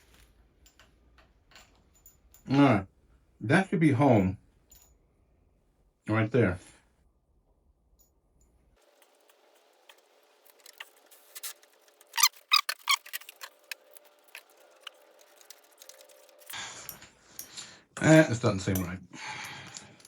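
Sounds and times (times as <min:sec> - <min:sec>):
hand tools clicking on bolts: 0:09.9 - 0:20.0.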